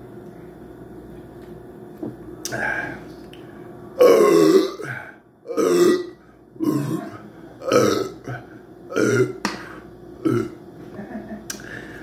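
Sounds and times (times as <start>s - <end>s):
man burping: 4.0s - 9.6s, 10.2s - 10.6s.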